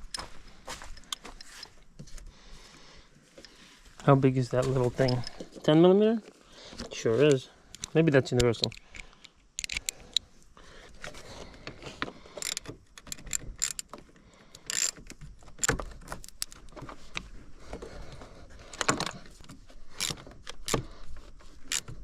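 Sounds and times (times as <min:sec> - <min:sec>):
wrench clicking on nut: 0:07.7 - 0:10.2, 0:12.4 - 0:16.6.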